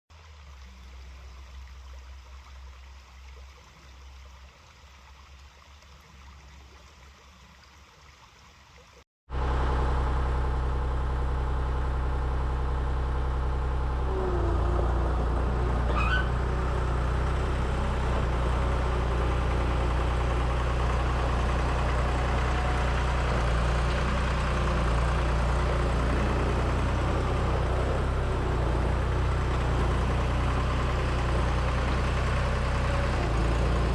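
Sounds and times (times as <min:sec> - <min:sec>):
skid steer engine running: 0:09.3 - 0:33.9.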